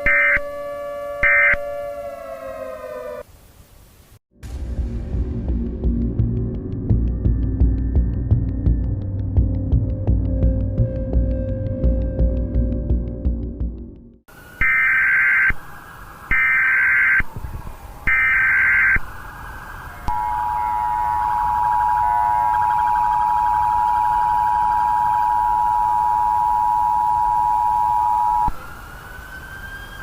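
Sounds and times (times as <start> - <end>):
data screech bursts: 20.1 - 28.5
two-tone attention signal: 20.1 - 28.5.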